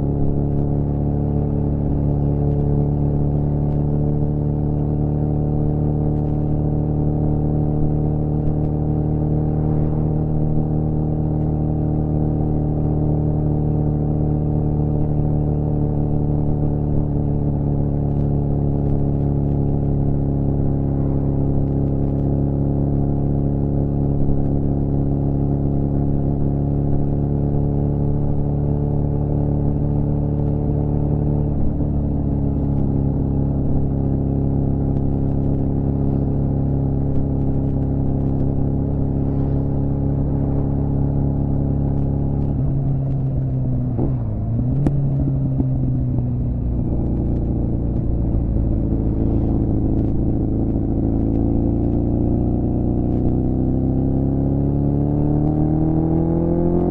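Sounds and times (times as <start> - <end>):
motorcycle engine running: 0.0 - 56.9.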